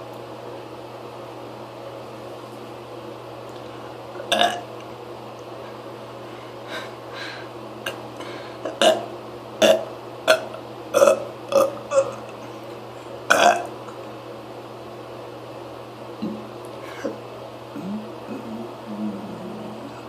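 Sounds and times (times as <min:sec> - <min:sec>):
person burping loudly: 0:04.2 - 0:04.6, 0:08.7 - 0:12.2, 0:13.3 - 0:13.7.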